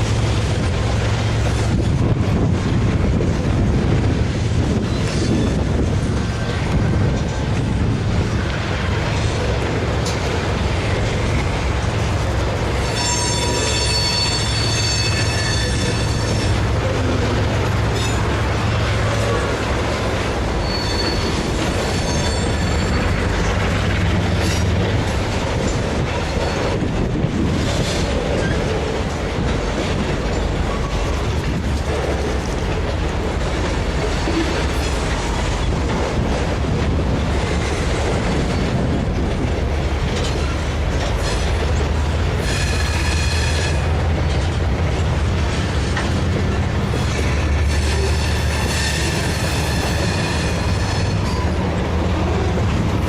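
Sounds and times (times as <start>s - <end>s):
train rumbling: 0.0s - 53.0s.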